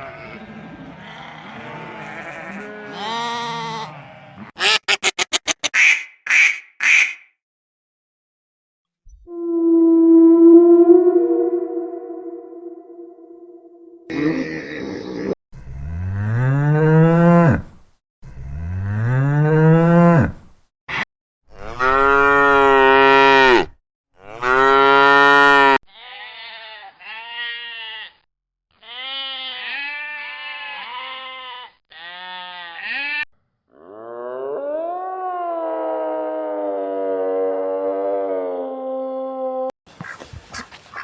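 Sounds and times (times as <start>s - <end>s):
wavering cow calls: 9.3s - 14.2s.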